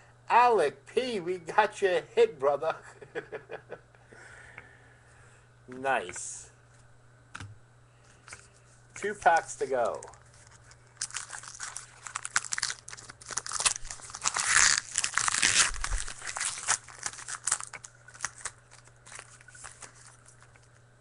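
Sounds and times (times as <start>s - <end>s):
cards clicking and rustling: 8.2s - 20.8s
wrapper tearing and crinkling: 9.3s - 20.8s.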